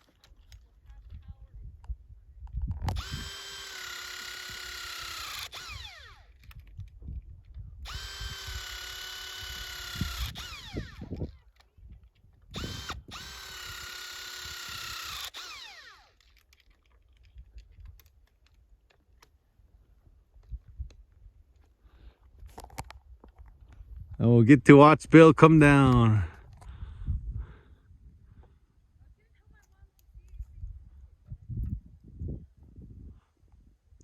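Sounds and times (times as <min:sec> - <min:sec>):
battery tool motor whining: 0:02.6 - 0:16.6.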